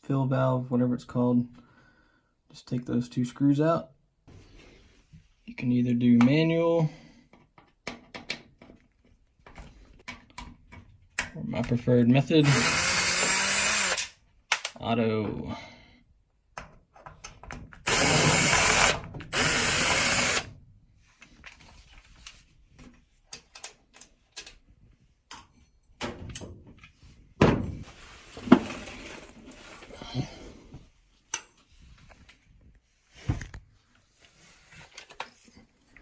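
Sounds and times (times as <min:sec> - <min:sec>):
cordless drill running: 0:12.4 - 0:14.1, 0:17.9 - 0:20.5
clicks and rattles of parts handled: 0:21.2 - 0:24.7.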